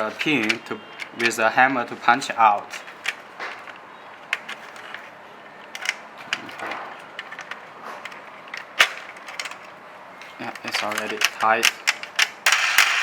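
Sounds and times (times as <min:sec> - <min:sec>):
small plastic parts clicking: 0:00.0 - 0:13.0.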